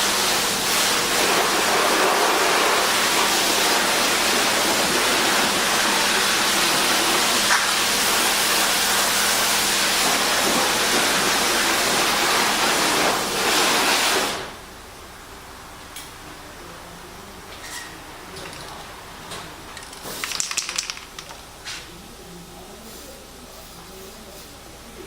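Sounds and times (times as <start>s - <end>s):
pressurised jet hissing: 0.0s - 14.6s.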